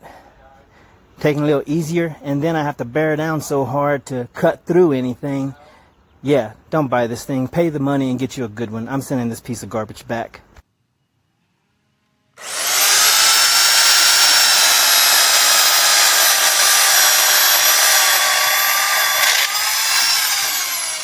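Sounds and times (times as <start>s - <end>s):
electric chainsaw motor whining: 12.4s - 21.0s.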